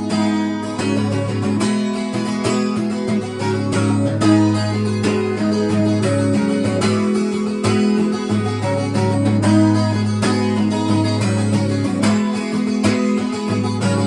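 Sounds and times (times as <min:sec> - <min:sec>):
acoustic guitar strumming: 0:00.0 - 0:14.0.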